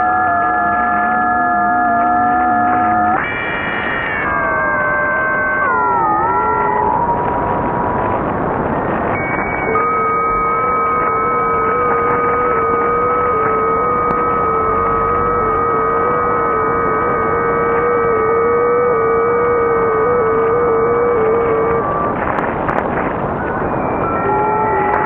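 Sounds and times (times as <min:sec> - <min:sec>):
radio hum of held tones: 0:08.7 - 0:25.0.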